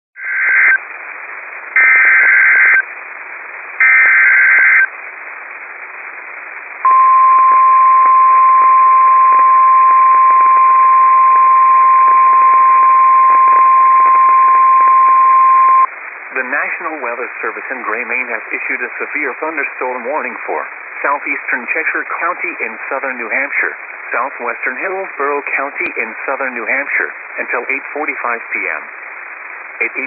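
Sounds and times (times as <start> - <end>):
radio static hiss: 0.2 - 30.0
steady alarm tone: 1.8 - 2.8, 3.8 - 4.9.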